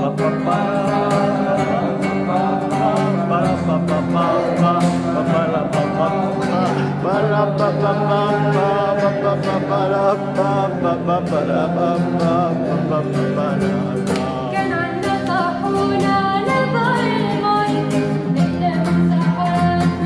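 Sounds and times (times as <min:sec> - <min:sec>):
acoustic guitar strumming: 0:00.0 - 0:20.0
person singing: 0:00.0 - 0:20.0.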